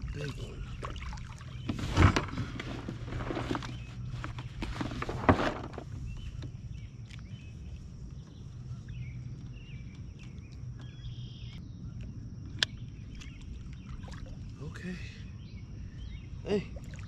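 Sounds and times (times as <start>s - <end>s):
handling noise: 1.6s - 6.7s
insect chirping: 5.9s - 17.0s.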